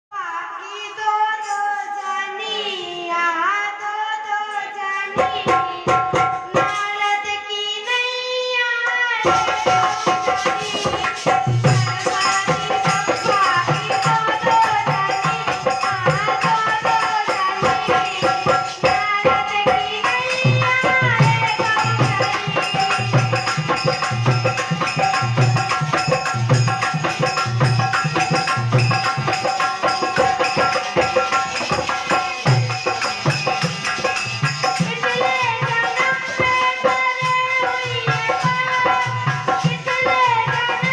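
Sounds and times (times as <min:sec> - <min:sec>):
girl singing: 0:00.1 - 0:27.3, 0:27.9 - 0:40.9
percussion keeping a steady beat: 0:00.1 - 0:40.9.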